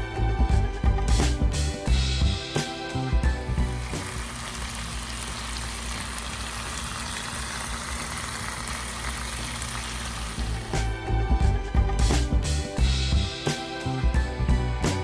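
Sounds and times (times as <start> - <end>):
background music with bass: 0.0 - 5.3, 10.2 - 15.0
steaks sizzling in a pan: 3.4 - 11.0.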